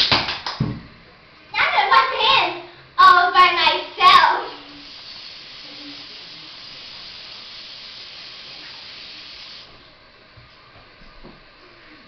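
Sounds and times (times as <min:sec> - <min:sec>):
tap water running: 0:04.1 - 0:09.8.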